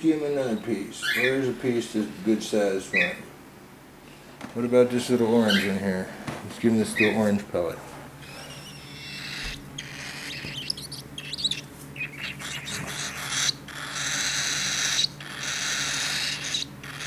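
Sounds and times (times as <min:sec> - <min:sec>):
cockatiel chick chirping: 0:01.0 - 0:01.4, 0:02.9 - 0:03.2, 0:05.4 - 0:05.8, 0:06.9 - 0:07.2, 0:08.2 - 0:17.0.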